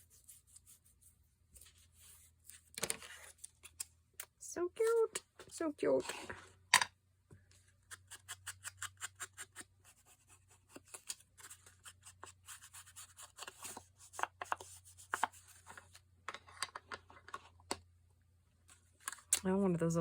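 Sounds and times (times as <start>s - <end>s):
soft scratching on paper: 0.0s - 3.5s, 9.1s - 16.0s.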